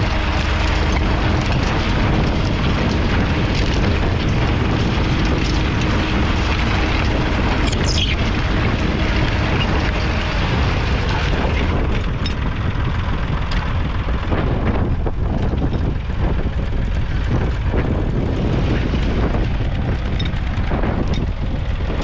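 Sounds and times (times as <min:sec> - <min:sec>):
diesel engine running under load: 0:00.0 - 0:22.0.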